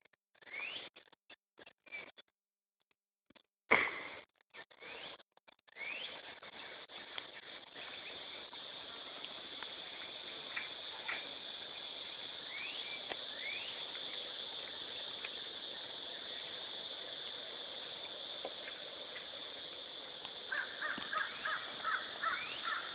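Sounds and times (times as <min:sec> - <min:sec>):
high insect drone: 0:05.8 - 0:22.9
harsh animal calls: 0:20.5 - 0:22.9
rising squeaky calls: 0:20.5 - 0:22.9.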